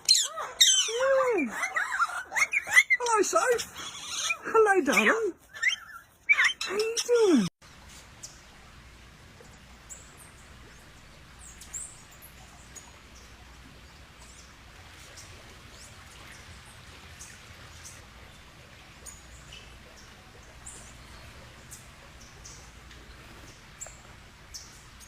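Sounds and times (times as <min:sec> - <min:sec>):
birds chirping: 0:00.0 - 0:25.0
low steady hum: 0:07.6 - 0:25.0.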